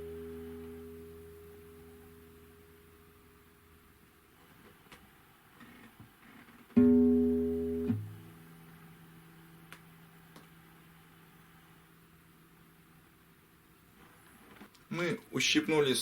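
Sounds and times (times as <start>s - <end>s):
faint harmonic ringing: 0.0s - 4.1s, 6.8s - 12.2s
guitar string plucked: 6.8s - 9.9s.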